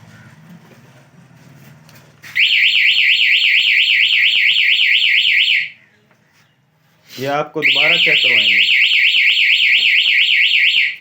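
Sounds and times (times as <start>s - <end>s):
motorcycle alarm siren warbling: 2.4s - 5.8s, 7.6s - 11.0s.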